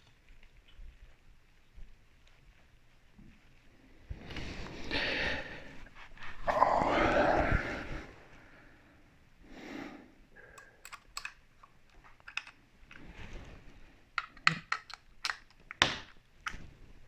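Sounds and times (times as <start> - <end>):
telescope gear clicks and taps: 10.6 - 13.0, 14.2 - 16.6.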